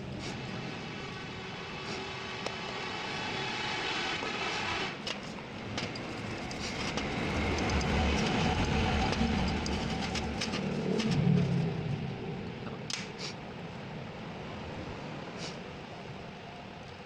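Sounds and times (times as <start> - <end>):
low rumble: 5.4 - 15.3.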